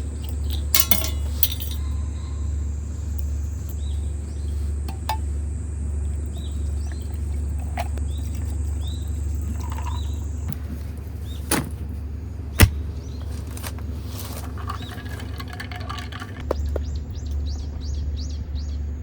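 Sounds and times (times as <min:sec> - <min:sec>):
low hum: 0:00.0 - 0:19.0
small birds chirping: 0:00.0 - 0:19.0.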